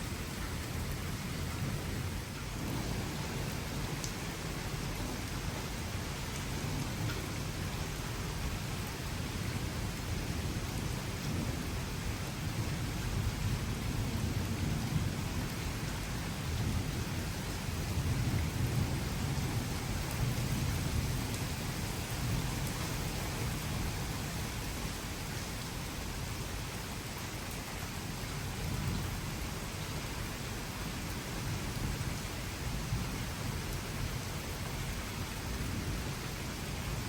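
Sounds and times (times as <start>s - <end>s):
steady rain falling: 0.0s - 37.0s
low rolling thunder: 0.1s - 7.9s, 10.2s - 24.7s.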